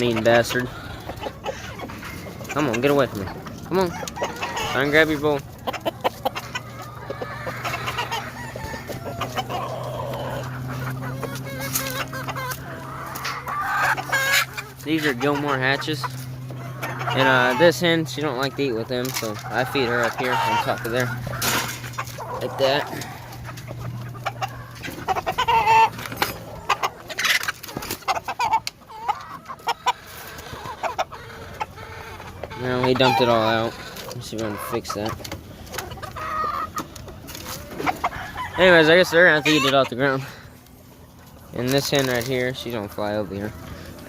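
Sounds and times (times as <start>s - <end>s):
chickens clucking: 0.0s - 44.0s
rooster crowing: 8.2s - 10.3s, 38.0s - 39.0s.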